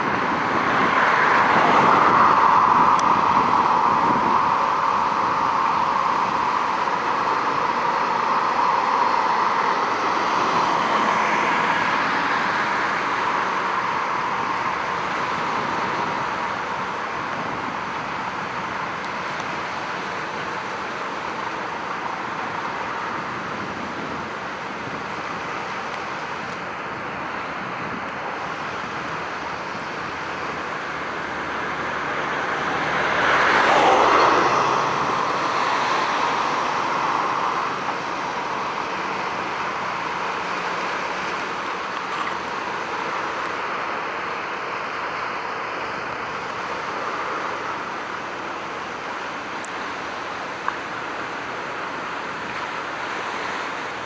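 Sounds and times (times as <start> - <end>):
road traffic hum: 0.0 - 54.0
vehicle passing: 29.1 - 40.7.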